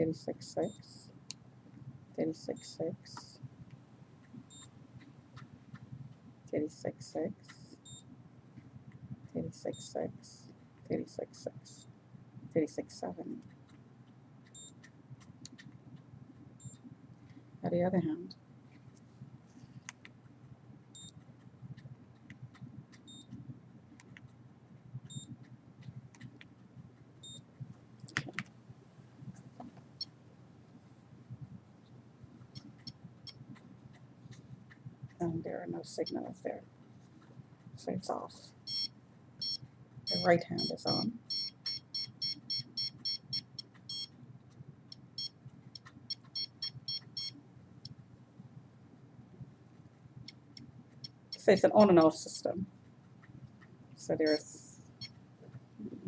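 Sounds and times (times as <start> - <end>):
steady low hum: 0.0 - 56.0
short high electronic beeps: 38.7 - 44.1.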